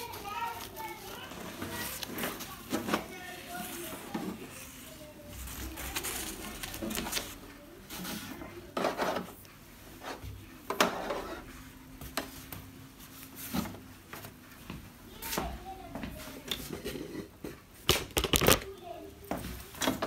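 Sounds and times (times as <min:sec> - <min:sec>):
plastic rubbing: 0:00.0 - 0:09.4
plastic tv casing clacking: 0:17.9 - 0:18.7.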